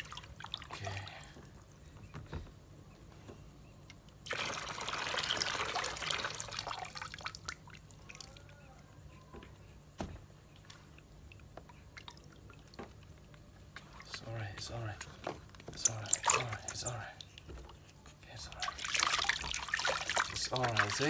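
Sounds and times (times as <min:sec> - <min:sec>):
water drips and splashes: 0:00.0 - 0:01.7, 0:04.2 - 0:08.5, 0:10.6 - 0:21.0
water being poured: 0:04.3 - 0:07.5, 0:18.6 - 0:21.0.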